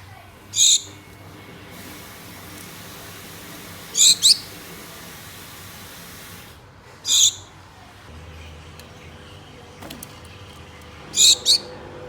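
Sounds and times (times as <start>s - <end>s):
finches calling: 0.5s - 1.0s, 4.0s - 4.6s, 11.1s - 11.8s.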